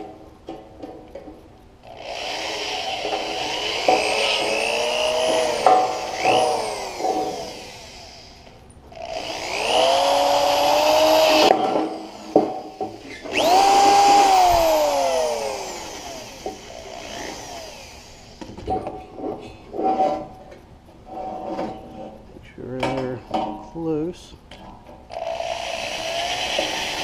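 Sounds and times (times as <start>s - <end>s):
electric drill whining: 1.8s - 18.6s, 25.1s - 27.0s.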